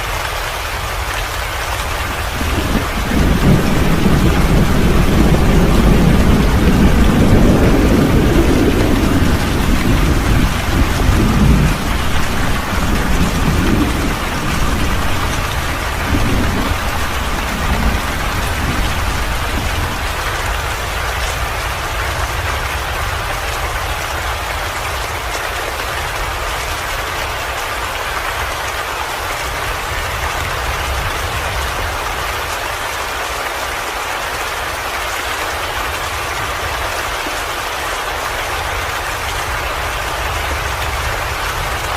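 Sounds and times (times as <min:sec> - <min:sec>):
heavy rain falling: 0:00.0 - 0:41.9
thunder rumbling: 0:02.0 - 0:23.8, 0:38.6 - 0:41.9.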